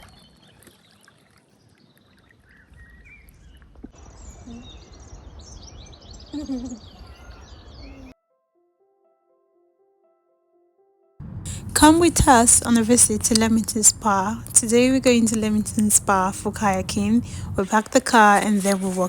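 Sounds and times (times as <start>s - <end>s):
small birds chirping: 2.5s - 8.1s
wind rumble on microphone: 11.2s - 19.0s.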